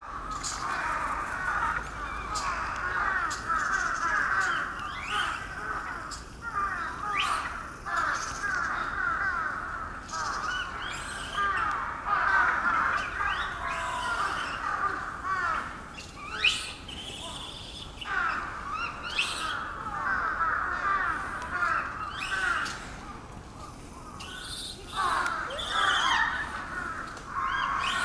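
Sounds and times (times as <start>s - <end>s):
monkeys calling in chorus: 0.3s - 23.3s, 24.0s - 28.0s
loud rising monkey calls: 24.2s - 28.0s.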